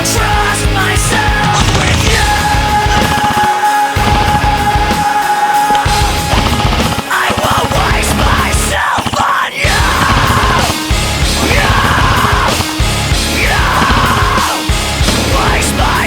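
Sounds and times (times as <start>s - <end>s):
heavy metal music: 0.0s - 16.0s
person yelling vocals: 7.1s - 10.8s, 11.4s - 16.0s.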